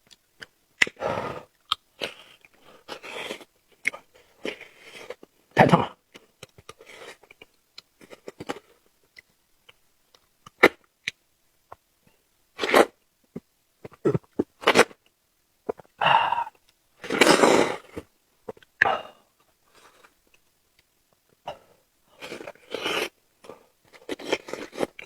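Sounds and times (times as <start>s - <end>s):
breathy puffs: 16.0s - 16.6s.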